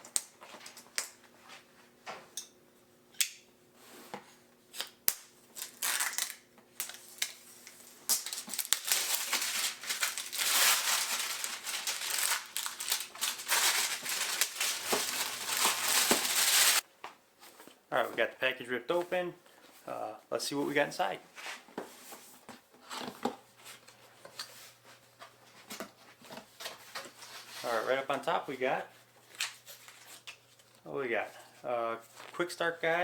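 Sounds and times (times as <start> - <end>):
packaging being ripped open: 4.8 - 16.8
packaging clicks and rustles: 5.6 - 16.8.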